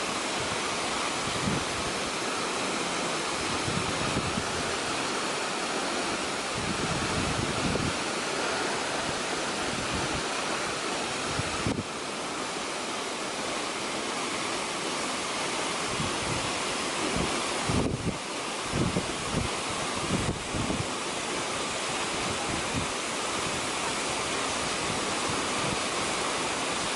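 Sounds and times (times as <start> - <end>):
waterfall rushing: 0.0 - 26.9
wind buffeting microphone: 0.3 - 12.2, 15.8 - 21.0.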